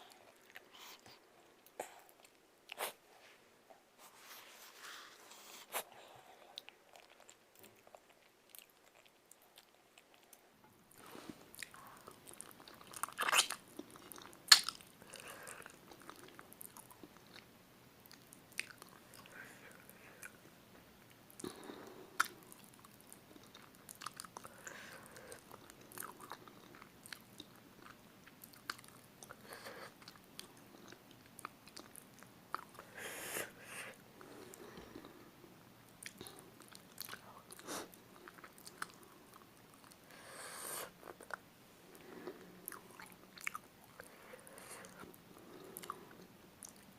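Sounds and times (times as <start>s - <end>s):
wet chewing and biting: 11.6s - 14.9s.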